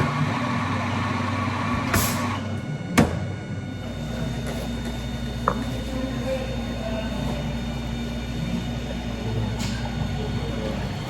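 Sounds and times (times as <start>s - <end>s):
machinery humming: 0.0s - 11.0s.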